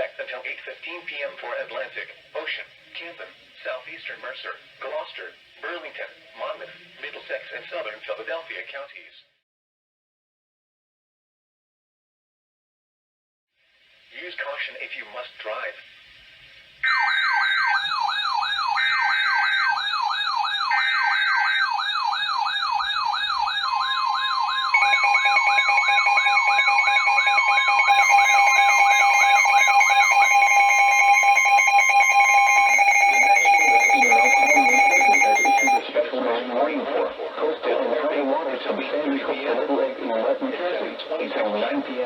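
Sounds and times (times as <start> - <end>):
electronic siren warble: 16.8 - 35.8
steady alarm tones: 16.8 - 35.8
steady attention tone: 24.2 - 35.8
digital data bursts: 24.5 - 35.8.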